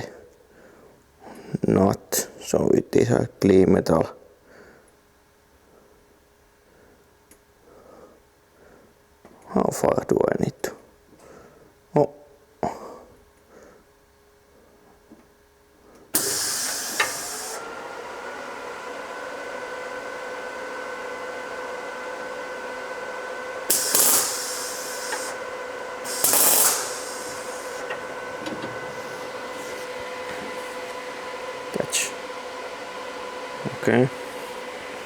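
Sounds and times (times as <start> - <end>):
short bursts of hissing: 16.2 - 17.7, 23.7 - 28.0
electric power tool motor running: 16.2 - 35.0.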